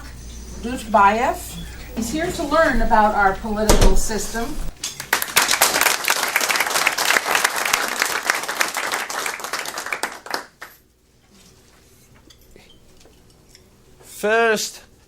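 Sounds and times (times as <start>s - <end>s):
people applauding: 5.0s - 10.8s.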